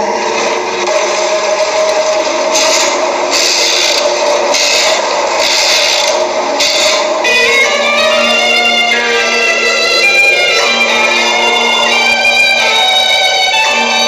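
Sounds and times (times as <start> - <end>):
scraping rasping horror effect: 0.0 - 14.0
high violin sting: 6.7 - 14.0.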